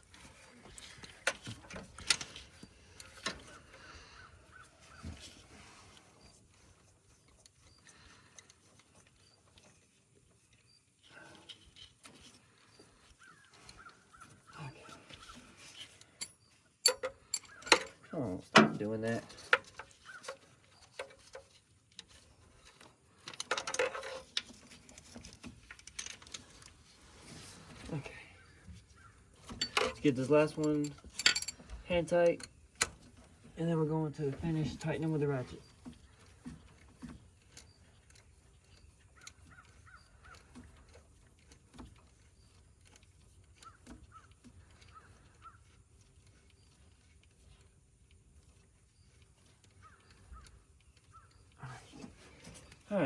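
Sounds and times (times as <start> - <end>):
metal tools clinking and scraping: 0.0 - 3.9, 10.4 - 28.1, 28.8 - 41.1
faint clicks and knocks of hand work: 0.0 - 33.6, 34.2 - 52.9
distant bird calling: 2.7 - 5.8, 12.4 - 18.4, 20.0 - 20.6, 28.2 - 30.9, 38.6 - 40.8, 43.6 - 46.8, 49.0 - 52.8.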